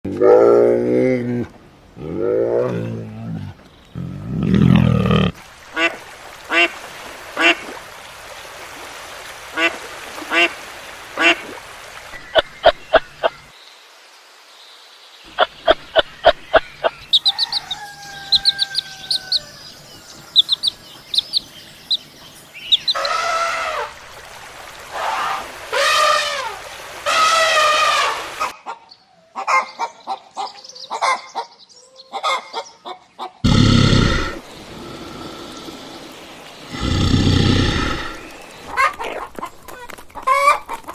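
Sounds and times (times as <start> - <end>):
poultry calling: 15.3 - 22.0.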